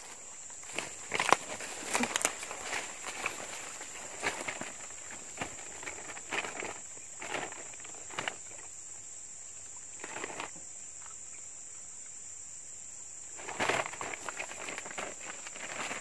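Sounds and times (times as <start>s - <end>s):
rustling and scuffing: 0.0s - 8.7s, 13.4s - 16.0s.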